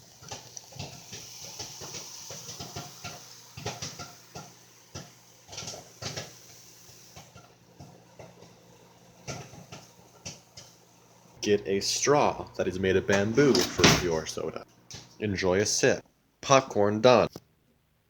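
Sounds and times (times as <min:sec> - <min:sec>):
popcorn popping: 0:00.0 - 0:11.6.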